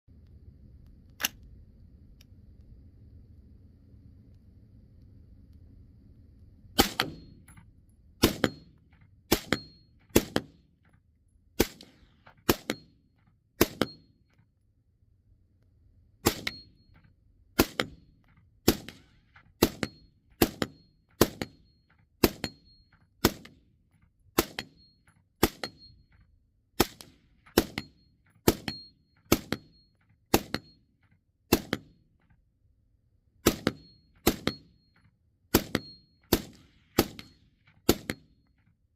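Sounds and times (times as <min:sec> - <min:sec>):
suppressed rifle shots: 0:06.8 - 0:07.5, 0:08.2 - 0:08.7, 0:09.3 - 0:10.6, 0:11.6 - 0:13.0, 0:13.6 - 0:14.1, 0:16.2 - 0:16.7, 0:17.6 - 0:21.6, 0:22.2 - 0:23.5, 0:24.4 - 0:25.9, 0:26.8 - 0:30.8, 0:31.5 - 0:31.9, 0:33.4 - 0:34.7, 0:35.5 - 0:38.3.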